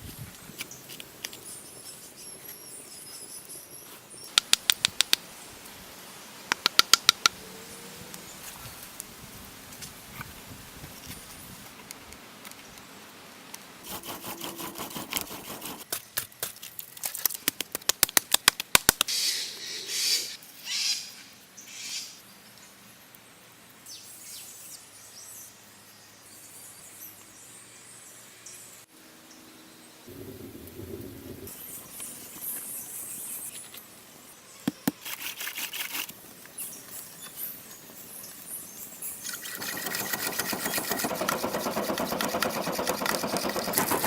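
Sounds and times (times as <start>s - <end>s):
stone scraping strokes: 13.8s - 15.9s.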